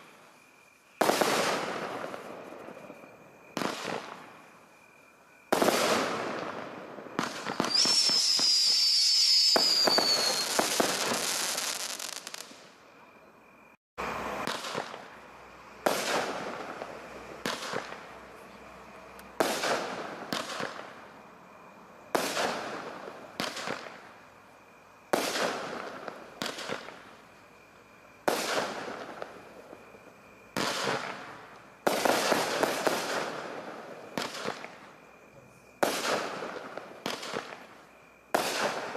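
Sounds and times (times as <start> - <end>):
fireworks crackling: 0.0 - 4.8, 5.5 - 12.8, 14.0 - 21.3, 22.0 - 24.2, 25.1 - 27.4, 28.2 - 38.9
fireworks bangs: 0.9 - 4.5, 5.5 - 12.8, 14.0 - 18.4, 19.3 - 21.2, 22.1 - 24.2, 25.1 - 27.2, 28.2 - 35.0, 35.7 - 38.9
falling whistle: 7.4 - 10.8.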